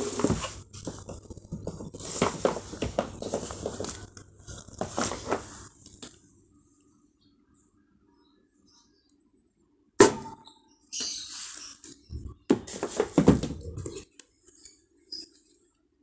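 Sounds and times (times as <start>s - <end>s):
clattering knocks and scrapes: 0.0s - 5.7s, 12.1s - 14.0s.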